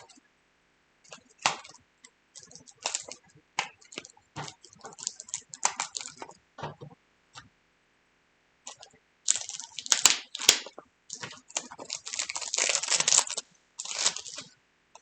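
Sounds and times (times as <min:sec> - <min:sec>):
packaging being opened by hand: 0:02.4 - 0:06.3, 0:09.3 - 0:14.5.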